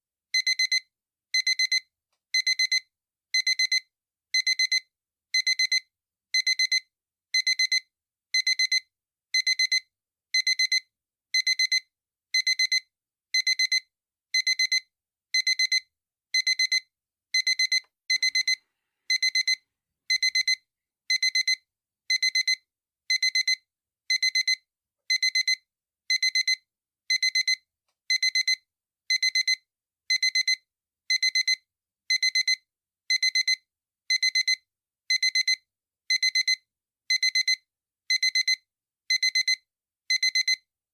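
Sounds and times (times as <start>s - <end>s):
alarm clock double beep: 2.4s - 2.8s, 16.4s - 16.8s, 17.4s - 40.6s.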